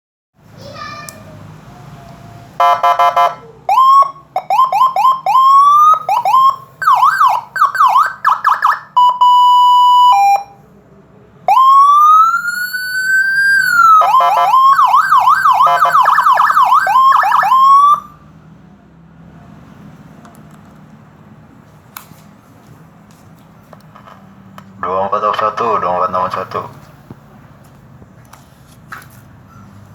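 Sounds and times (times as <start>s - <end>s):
electronic police siren: 2.6s - 10.6s, 11.5s - 18.2s.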